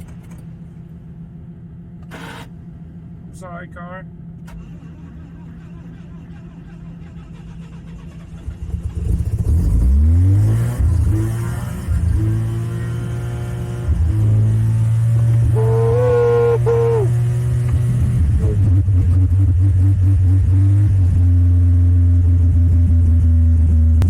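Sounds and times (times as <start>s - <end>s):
rotary engine starting and revving: 4.5s - 20.2s.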